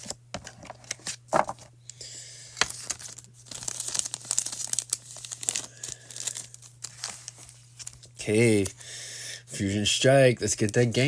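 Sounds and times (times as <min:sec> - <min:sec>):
foil wrapper crinkling and tearing: 0:02.6 - 0:08.8, 0:10.4 - 0:11.0.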